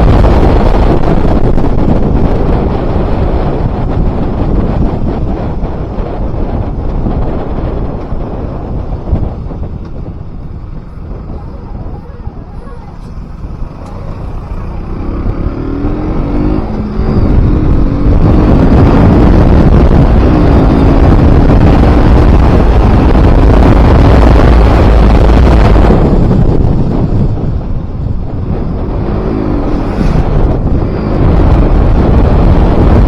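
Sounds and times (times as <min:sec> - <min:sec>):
wind noise on microphone: 0:00.0 - 0:33.0
motorcycle engine pulling: 0:09.2 - 0:22.9.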